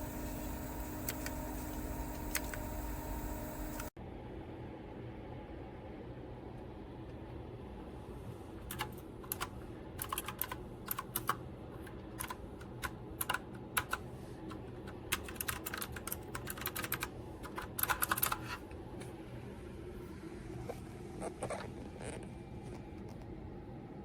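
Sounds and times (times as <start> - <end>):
typing on clicky mechanical keyboard: 8.7 - 18.6.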